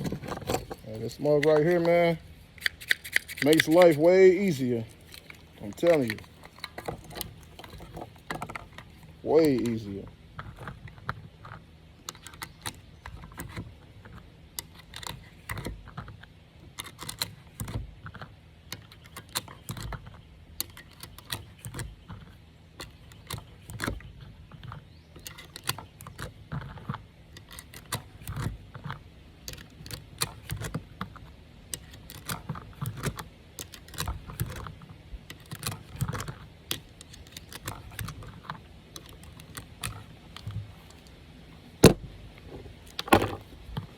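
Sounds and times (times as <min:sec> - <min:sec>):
cartridges clicking into magazine: 0:02.6 - 0:04.0.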